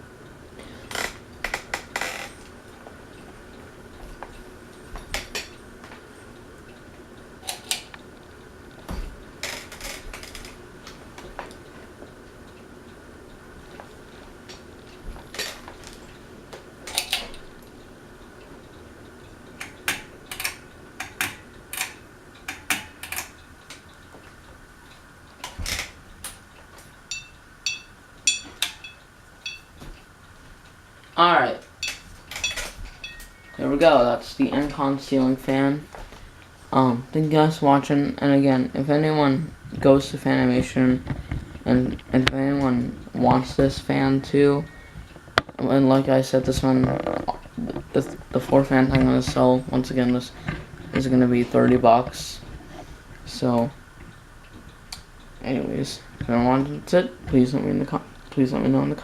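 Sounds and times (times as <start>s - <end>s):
ceiling fan motor hum: 0.0s - 59.0s
light metallic clinks and ticks: 26.3s - 30.0s, 31.1s - 33.4s.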